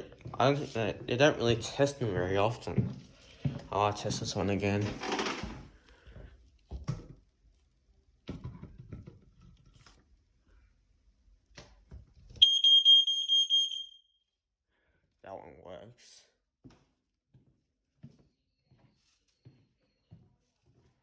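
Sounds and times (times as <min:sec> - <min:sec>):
smoke alarm high-pitched tone: 0:12.4 - 0:14.1.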